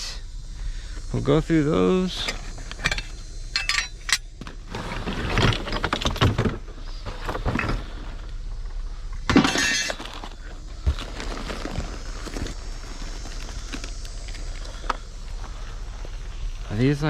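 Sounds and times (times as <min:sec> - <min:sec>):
hard items clattering and clinking: 0:02.3 - 0:08.0, 0:09.3 - 0:12.6.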